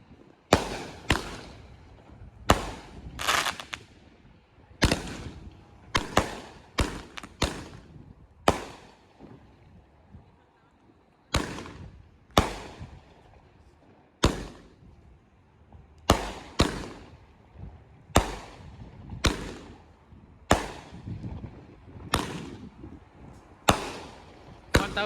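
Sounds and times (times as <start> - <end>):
fireworks banging: 0.5 - 3.9, 4.8 - 9.8, 11.3 - 13.4, 15.7 - 25.0.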